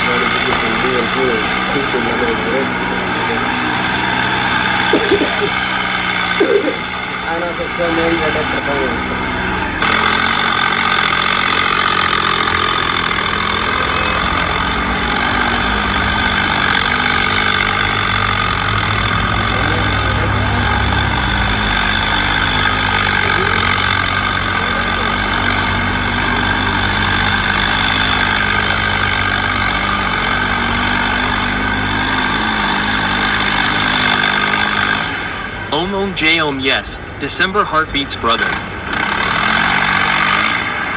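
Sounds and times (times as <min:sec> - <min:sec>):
heavy vehicle engine running: 0:00.0 - 0:40.9.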